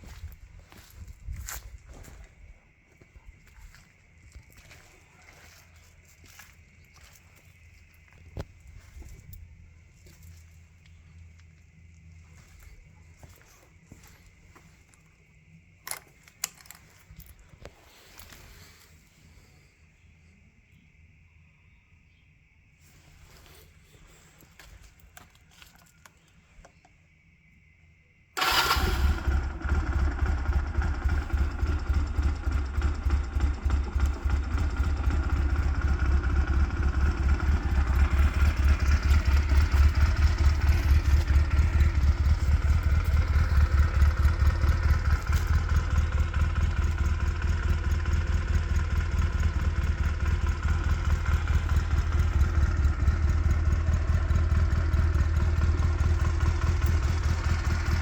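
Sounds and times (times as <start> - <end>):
motorcycle engine starting and idling: 0.0 - 7.2, 15.7 - 19.7, 28.4 - 58.0.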